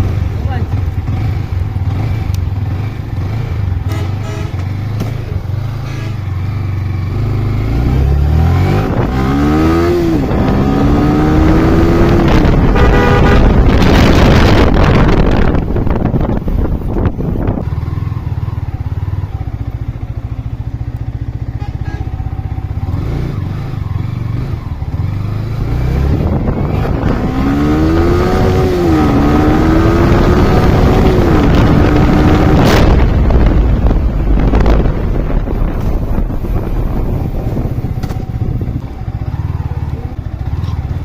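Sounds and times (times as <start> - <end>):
motorcycle engine running: 0.0 - 41.0
wind on microphone: 8.0 - 18.3, 24.5 - 39.2.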